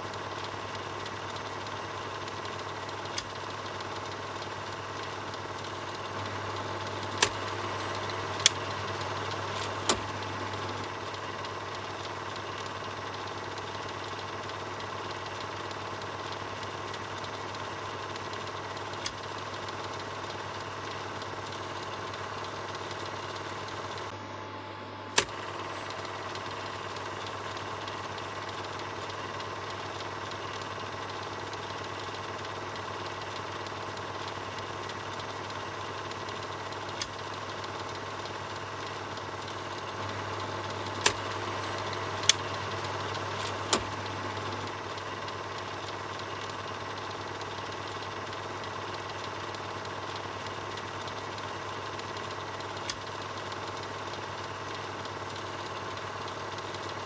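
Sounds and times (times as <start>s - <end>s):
film projector running: 0.0s - 57.0s
sharp clicks: 0.4s - 12.9s, 25.2s - 32.2s, 32.8s - 53.9s.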